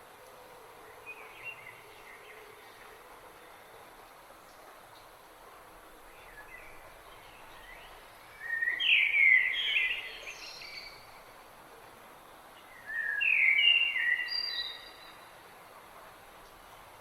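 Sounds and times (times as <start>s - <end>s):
faint background hiss: 0.0s - 17.0s
songbird warbling song: 0.3s - 2.8s, 6.1s - 11.2s, 12.6s - 15.4s.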